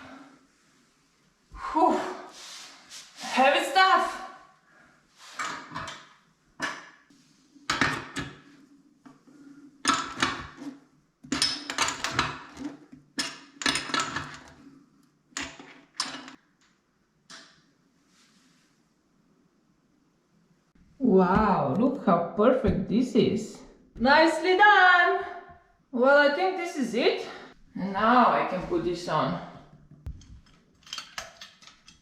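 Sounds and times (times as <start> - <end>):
sink knocks clatters and scrapes: 5.3 - 7.0, 7.7 - 8.5, 9.8 - 14.6, 29.6 - 32.0.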